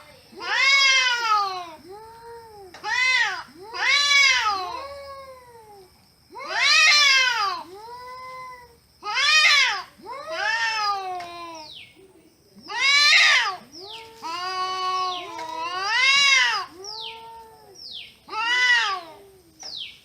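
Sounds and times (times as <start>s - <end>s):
cat meowing: 0.4s - 1.7s, 6.4s - 7.6s, 8.2s - 11.6s, 12.7s - 19.5s.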